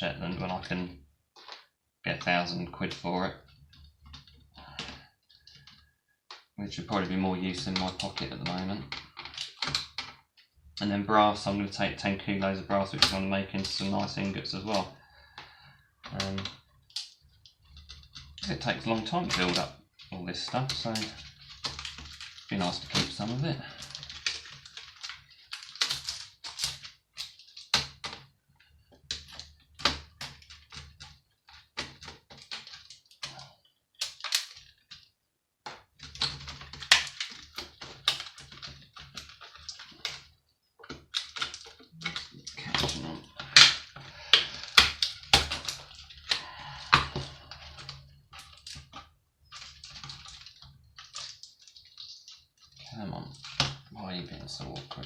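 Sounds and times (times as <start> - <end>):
tools and parts clicking and rattling: 7.6 - 10.5, 12.9 - 55.0.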